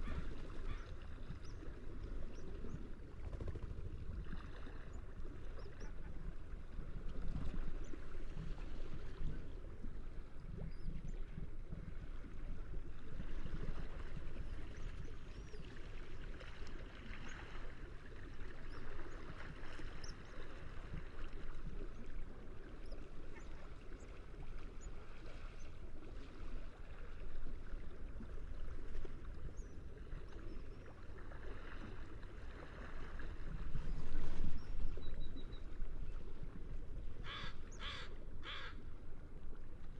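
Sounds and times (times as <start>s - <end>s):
seagull cries: 37.2s - 38.8s.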